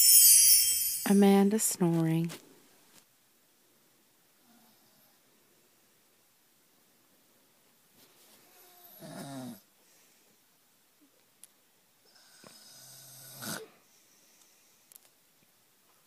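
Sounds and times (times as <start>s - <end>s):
person snoring: 8.6s - 9.6s, 12.1s - 13.8s.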